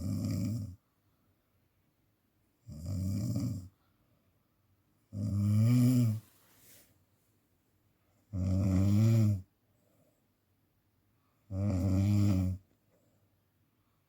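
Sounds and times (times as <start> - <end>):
person snoring loudly: 0.0 - 0.8, 2.7 - 3.7, 5.2 - 6.2, 8.3 - 9.4, 11.5 - 12.6.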